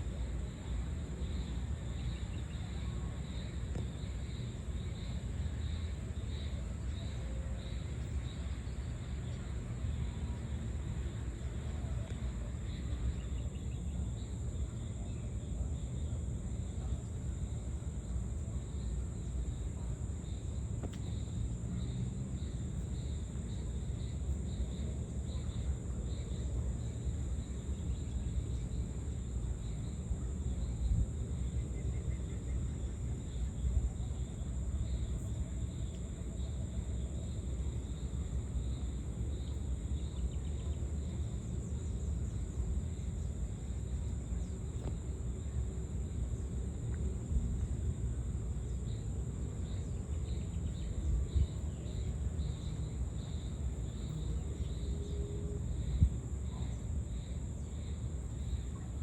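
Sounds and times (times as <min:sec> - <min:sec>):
insect chirping: 0:00.1 - 0:59.0.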